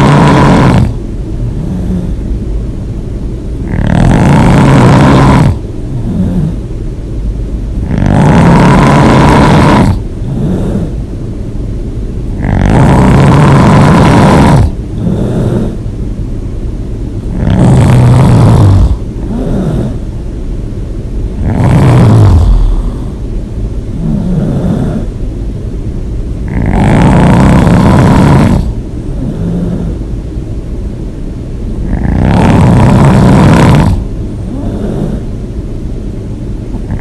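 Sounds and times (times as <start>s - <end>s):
person snoring loudly: 0.0s - 2.2s, 3.6s - 6.6s, 7.8s - 11.0s, 12.3s - 15.8s, 17.3s - 20.1s, 21.4s - 23.2s, 24.0s - 25.1s, 26.4s - 30.0s, 31.8s - 35.3s, 36.8s - 37.0s
quiet breathing: 0.0s - 2.5s, 5.4s - 6.8s, 9.8s - 11.1s, 14.6s - 16.0s, 17.2s - 20.4s, 21.3s - 25.3s, 26.4s - 30.3s, 31.9s - 35.4s.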